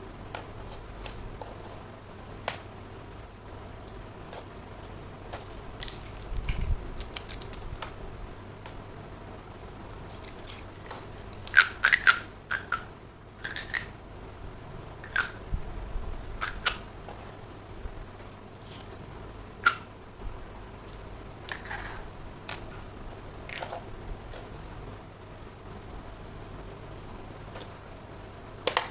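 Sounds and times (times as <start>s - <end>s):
toy pieces clicking and tapping: 10.1s - 13.9s, 15.0s - 15.4s, 19.6s - 19.9s.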